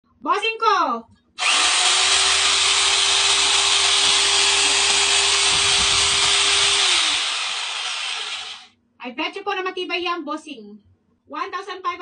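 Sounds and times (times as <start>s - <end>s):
demolition hammer running: 1.4s - 8.7s.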